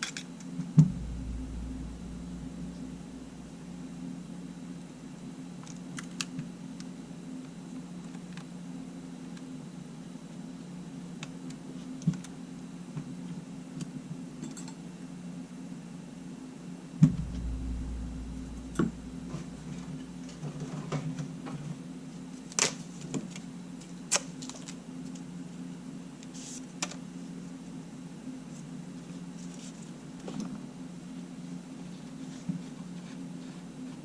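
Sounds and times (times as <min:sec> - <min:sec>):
sharp knock: 0:00.8 - 0:04.0, 0:17.0 - 0:20.4
low rumble: 0:00.8 - 0:04.5, 0:17.0 - 0:20.4
steady low hum: 0:00.8 - 0:05.2, 0:17.0 - 0:20.6.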